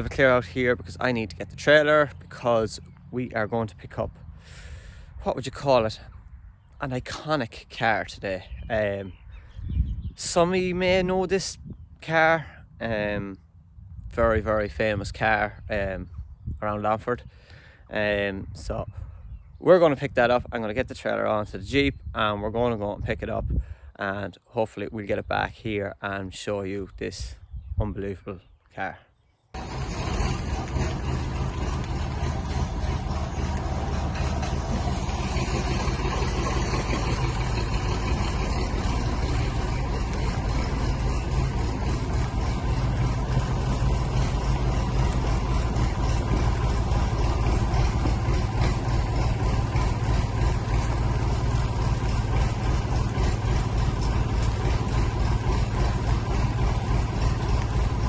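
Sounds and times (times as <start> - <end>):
car engine running with low rumble: 29.6 - 58.0.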